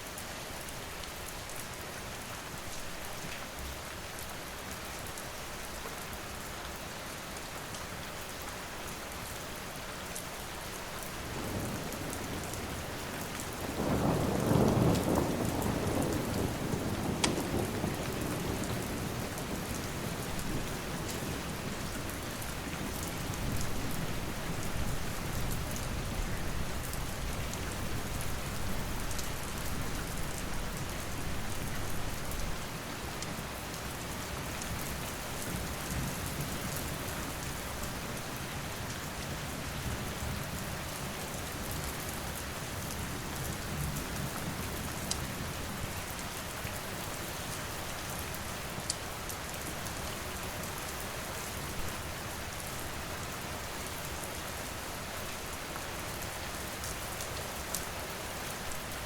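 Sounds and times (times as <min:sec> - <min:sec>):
steady rain falling: 0:00.0 - 0:59.0
thunder rumbling: 0:13.6 - 0:21.6.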